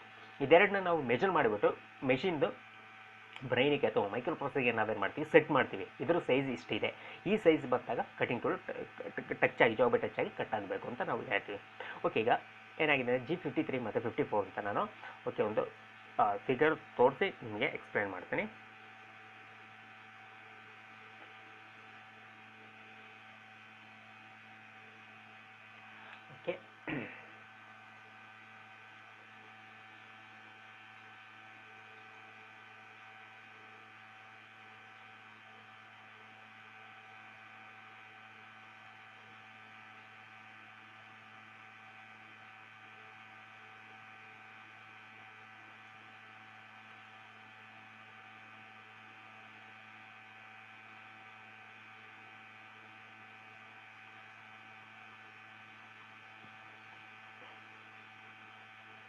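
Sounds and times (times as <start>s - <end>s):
faint electrical hum: 0.0s - 59.0s.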